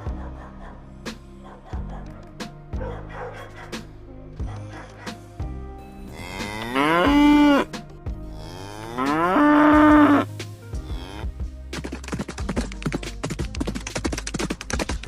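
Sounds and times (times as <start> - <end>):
cow mooing: 6.1 - 7.7, 8.3 - 10.3.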